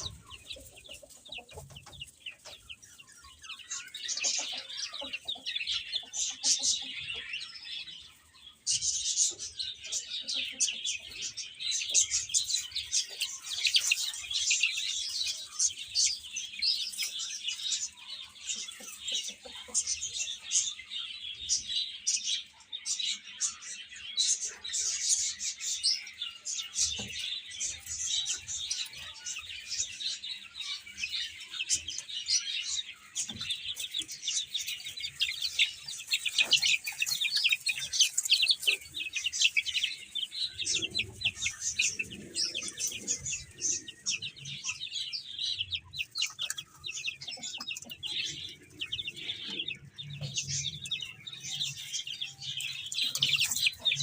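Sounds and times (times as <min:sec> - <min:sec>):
baby chicks peeping: 0:00.0 - 0:54.0.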